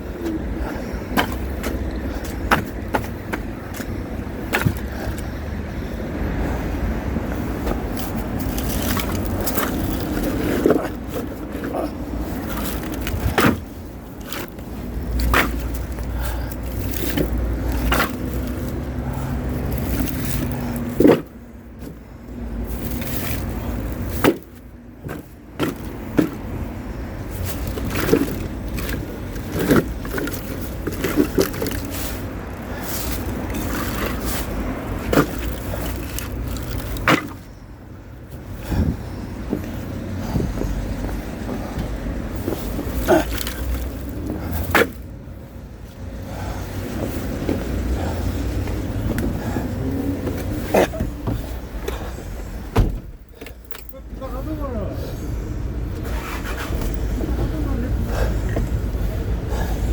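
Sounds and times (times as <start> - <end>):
engine low rumble: 0.0 - 59.9
sharp knocks and thuds: 2.4 - 5.2, 12.6 - 14.6, 24.0 - 26.5, 35.0 - 37.5, 52.6 - 53.3.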